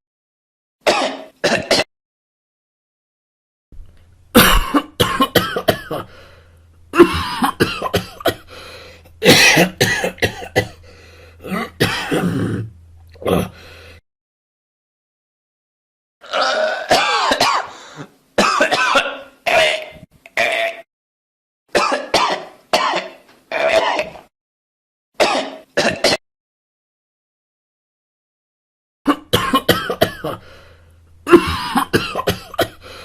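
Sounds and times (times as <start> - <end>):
person coughing: 0.8 - 1.9, 4.4 - 6.2, 6.9 - 13.7, 16.4 - 20.8, 21.7 - 24.3, 25.2 - 26.2, 29.1 - 33.0.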